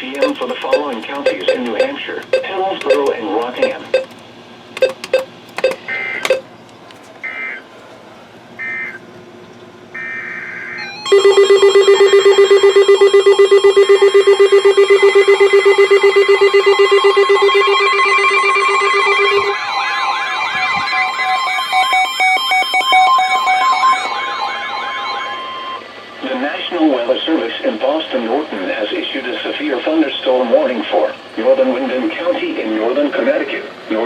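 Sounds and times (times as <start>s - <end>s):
rapidly pulsing alert beep: 0.0s - 4.2s, 4.8s - 6.4s, 10.8s - 19.4s
warbling siren-like alert tone: 10.0s - 26.2s.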